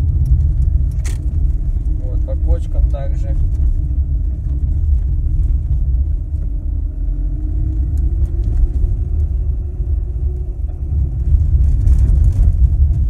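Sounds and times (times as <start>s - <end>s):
car engine hum: 0.0s - 13.0s
road rumble inside car: 0.0s - 13.0s.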